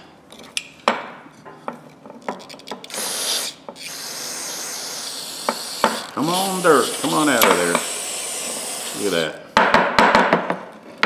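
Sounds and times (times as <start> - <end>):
aerosol can spraying: 2.9 - 9.2.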